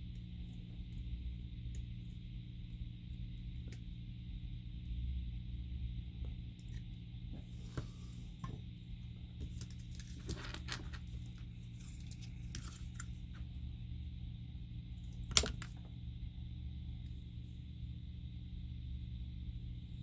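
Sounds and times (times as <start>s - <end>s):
electrical hum and hiss: 0.0s - 20.0s.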